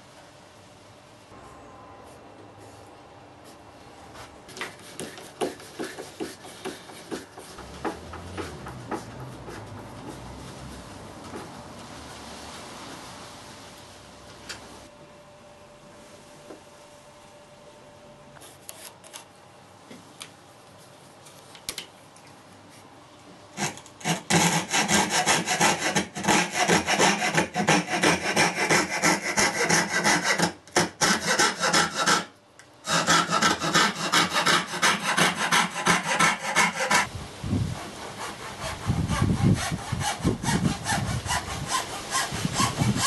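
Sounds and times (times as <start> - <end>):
hand saw cutting wood: 4.9 - 10.4, 23.6 - 37.1, 37.8 - 43.0.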